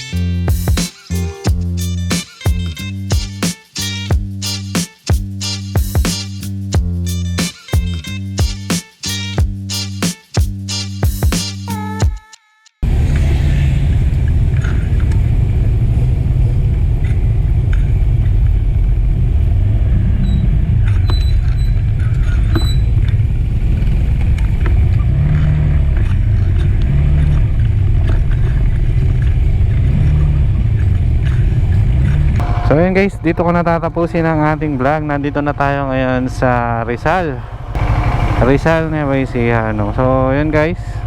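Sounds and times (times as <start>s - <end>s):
motorcycle engine rumble: 12.8s - 41.0s.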